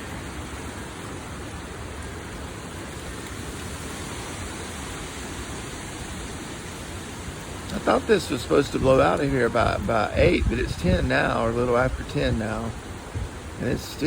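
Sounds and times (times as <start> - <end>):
strong wind blowing: 3.8 - 14.0.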